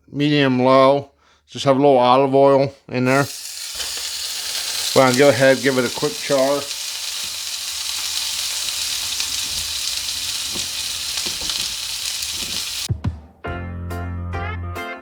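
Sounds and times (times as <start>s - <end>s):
chicken sizzling in oil: 3.0s - 12.9s
pan knocking: 8.1s - 12.8s
music: 12.9s - 15.0s.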